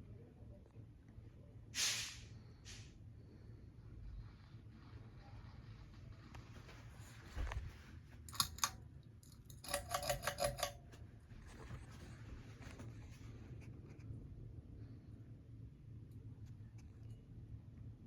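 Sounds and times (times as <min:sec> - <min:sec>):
ceiling fan motor hum: 0:00.0 - 0:18.0
sharp clicks: 0:08.3 - 0:10.8
rattling run of clicks: 0:08.3 - 0:11.0.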